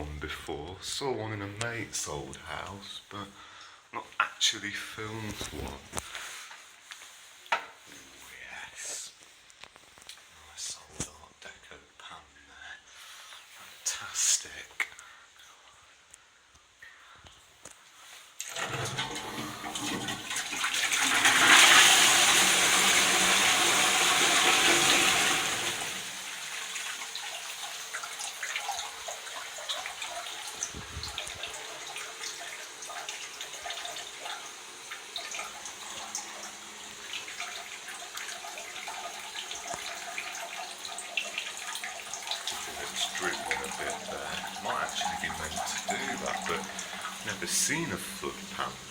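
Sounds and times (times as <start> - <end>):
toilet flushing: 18.4 - 48.9
water trickling and dripping: 26.0 - 48.9.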